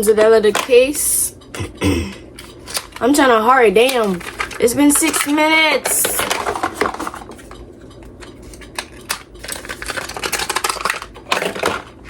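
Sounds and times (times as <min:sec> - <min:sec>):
plastic and cardboard packaging rustling: 0:03.8 - 0:07.6, 0:08.3 - 0:12.0.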